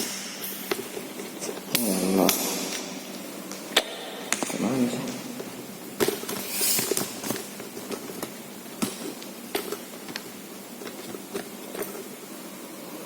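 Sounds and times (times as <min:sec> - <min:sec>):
hissing scrape: 0:06.4 - 0:07.1.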